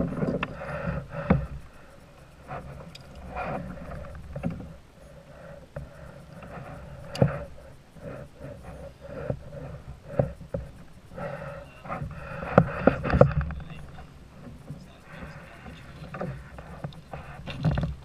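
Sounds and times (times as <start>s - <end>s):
steady background noise: 0.0s - 18.0s
knocks and bumps in a boat: 11.8s - 18.0s.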